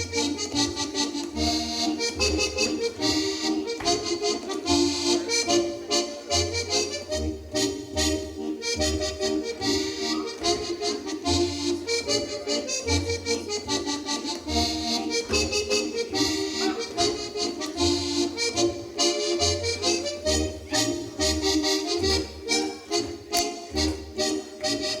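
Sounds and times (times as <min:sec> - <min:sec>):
accordion folk dance tune: 0:00.0 - 0:25.0
dancers slapping and stamping: 0:02.2 - 0:05.5, 0:09.5 - 0:11.1, 0:13.3 - 0:17.8.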